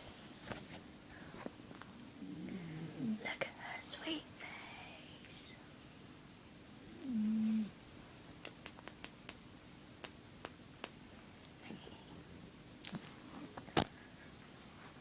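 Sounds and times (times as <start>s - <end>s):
faint low hum: 0.0s - 15.0s
small wet smacks: 8.4s - 9.4s, 10.0s - 11.6s, 12.8s - 13.2s.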